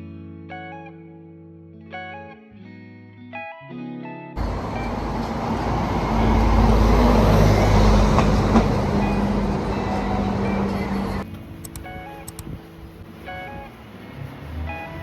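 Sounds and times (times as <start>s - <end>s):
vehicle rumbling: 4.4s - 11.3s.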